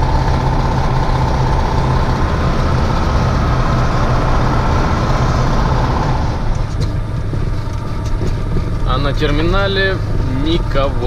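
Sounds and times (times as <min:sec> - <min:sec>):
road and tyre noise: 0:00.0 - 0:11.0
truck diesel engine running: 0:00.0 - 0:11.0.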